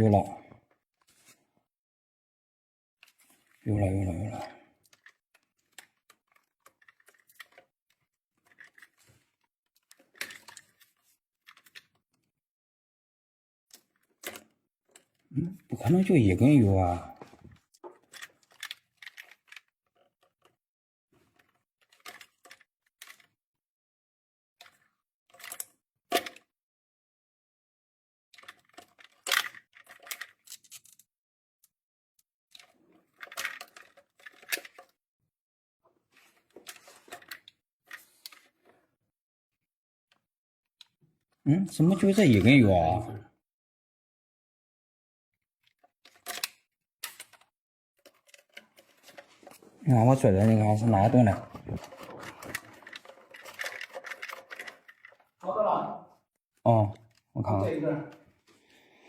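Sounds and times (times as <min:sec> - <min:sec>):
small clicks and rustles: 0:00.6 - 0:01.6, 0:03.0 - 0:03.7, 0:04.7 - 0:12.4, 0:13.7 - 0:15.3, 0:17.1 - 0:20.6, 0:21.2 - 0:23.4, 0:24.6 - 0:26.5, 0:28.3 - 0:31.8, 0:32.5 - 0:35.0, 0:35.8 - 0:39.0, 0:45.4 - 0:55.4
tools clicking and knocking: 0:32.5 - 0:35.0, 0:45.6 - 0:49.7, 0:51.4 - 0:55.4
tools clattering: 0:50.9 - 0:55.2.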